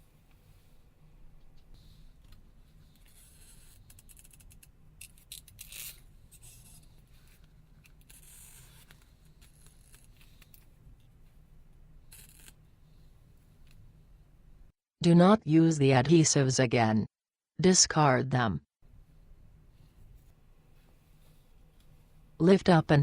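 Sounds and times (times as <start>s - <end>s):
adhesive tabs crackling and scraping: 3.0s - 10.7s, 12.1s - 12.6s.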